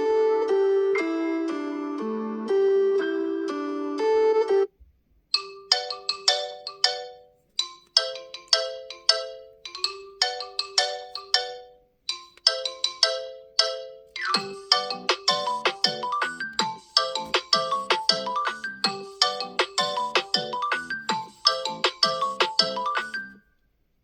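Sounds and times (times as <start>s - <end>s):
phone ringtone melody: 5.4s - 23.5s.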